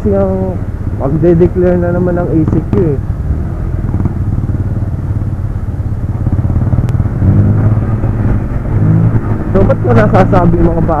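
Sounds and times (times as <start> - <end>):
motorcycle engine running: 0.0 - 11.0
wind noise: 3.3 - 11.0.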